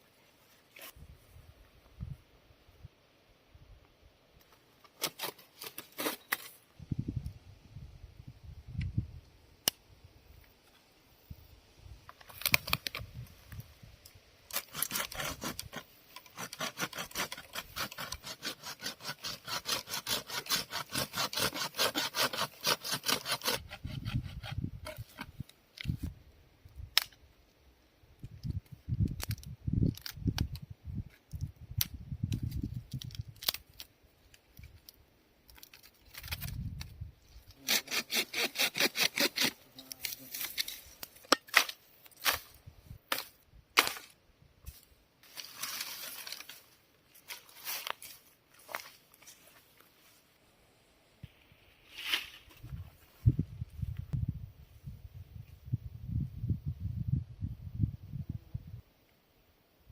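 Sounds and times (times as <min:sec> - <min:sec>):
hand saw cutting wood: 0:14.5 - 0:25.2, 0:37.5 - 0:40.6.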